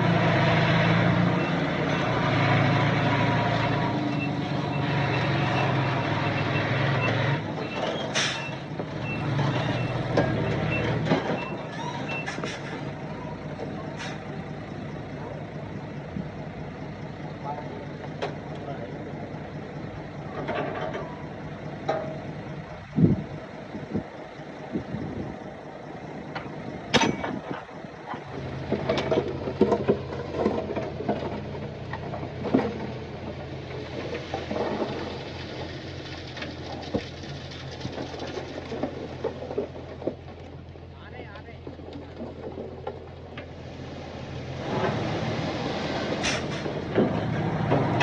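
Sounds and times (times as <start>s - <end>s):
diesel engine drone: 0.0s - 48.0s
sharp knocks and clatter: 21.8s - 22.3s, 26.3s - 40.8s, 41.4s - 43.6s.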